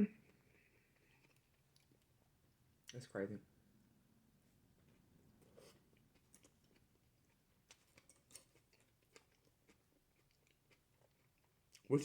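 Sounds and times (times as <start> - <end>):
person chewing food: 0.3 - 2.2, 4.8 - 11.9.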